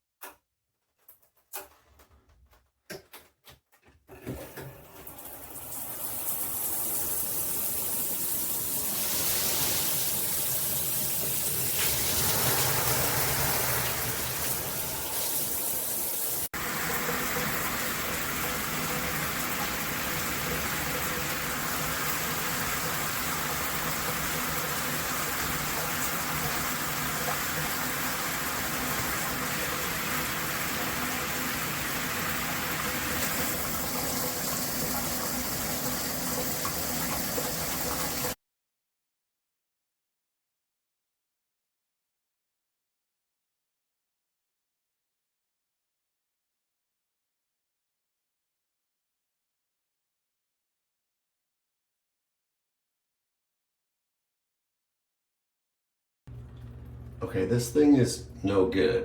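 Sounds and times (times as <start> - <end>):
shower spray splashing: 5.3 - 38.4.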